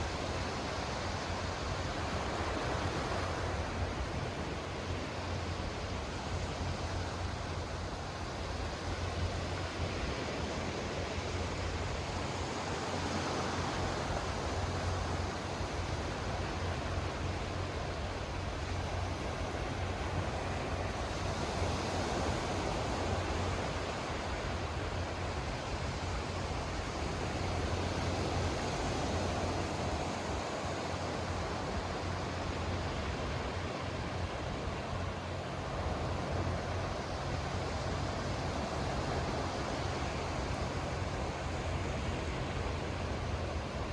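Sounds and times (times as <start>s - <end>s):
constant low hum: 0.0s - 43.9s.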